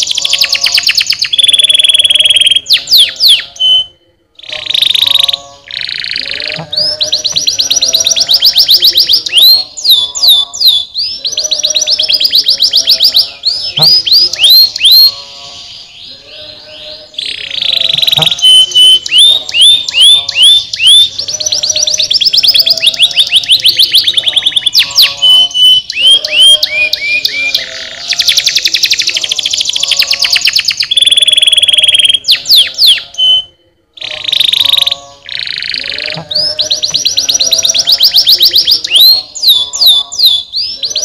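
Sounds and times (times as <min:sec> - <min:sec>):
canary singing trills: 0:00.0 - 0:41.0.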